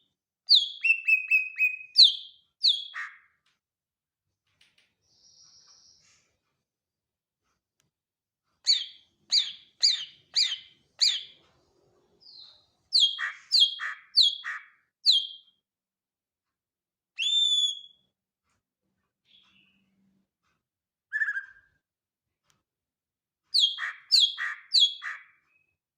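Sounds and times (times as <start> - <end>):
bird singing whistled notes: 0.5 - 3.0, 15.0 - 15.5, 17.2 - 18.1, 21.1 - 21.8.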